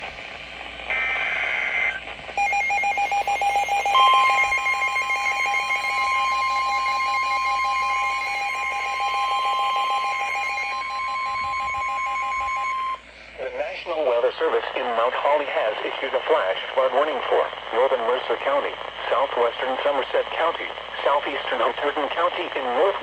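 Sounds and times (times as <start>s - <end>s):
high electronic tones: 0.9s - 13.0s.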